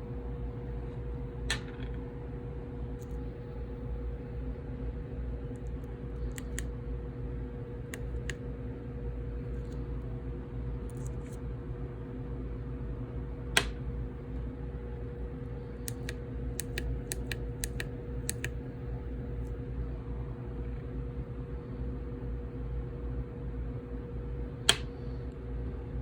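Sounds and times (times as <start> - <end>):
steady low hum: 0.0 - 26.0
sharp clicks: 15.9 - 18.6.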